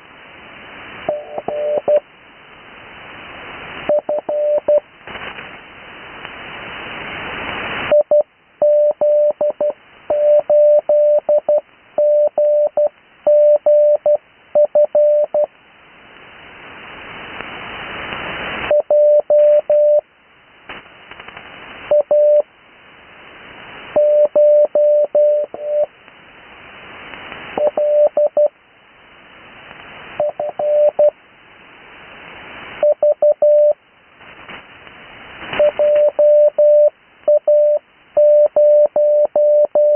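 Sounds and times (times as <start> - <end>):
radio band hiss: 0.8 - 8.2, 16.0 - 20.0, 29.1 - 36.8
morse code tone: 1.1 - 2.0, 3.9 - 4.8, 7.9 - 15.5, 18.7 - 20.0, 24.0 - 25.9, 27.6 - 28.5, 30.2 - 31.1, 32.8 - 33.8, 35.6 - 39.9.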